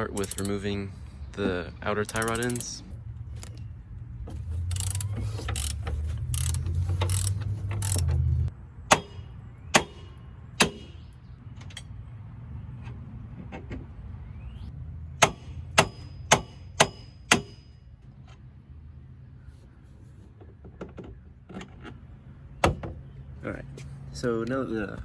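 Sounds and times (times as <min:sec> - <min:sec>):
power tool humming and ratcheting: 0:00.0 - 0:00.6, 0:04.6 - 0:08.2
metal-on-metal clicks: 0:00.0 - 0:00.8, 0:02.0 - 0:03.7, 0:04.5 - 0:10.0.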